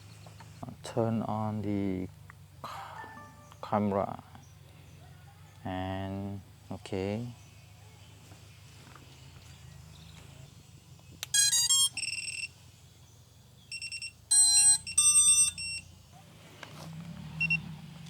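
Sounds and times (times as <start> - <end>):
electronic startup beeps: 3.0 - 3.7.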